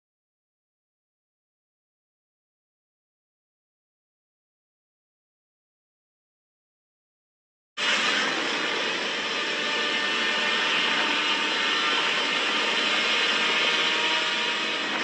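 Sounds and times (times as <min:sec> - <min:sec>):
steady rushing noise: 0:07.8 - 0:15.0.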